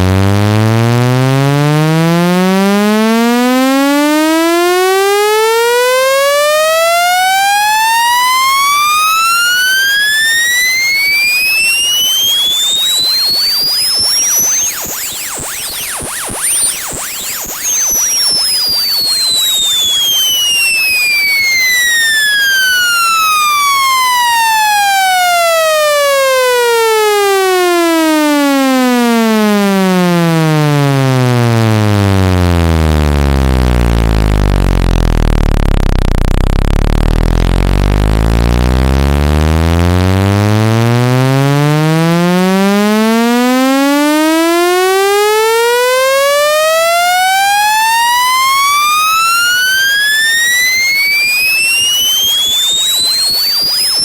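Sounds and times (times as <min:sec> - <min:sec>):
gliding electronic sweep tone: 0:07.8 - 0:24.6, 0:47.9 - 0:54.0.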